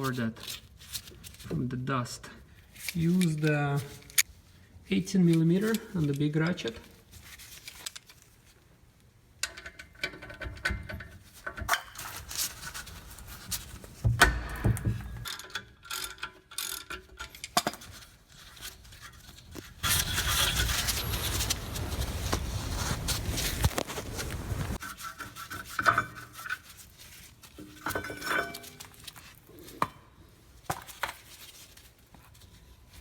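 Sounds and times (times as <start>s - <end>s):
metal clicks and knocks: 9.4s - 11.9s.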